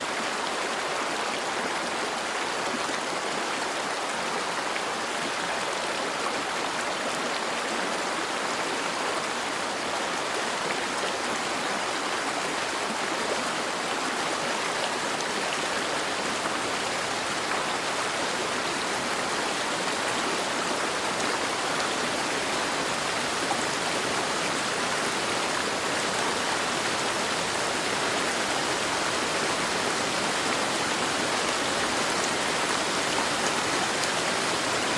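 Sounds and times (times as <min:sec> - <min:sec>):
heavy rain falling: 0:13.7 - 0:34.9.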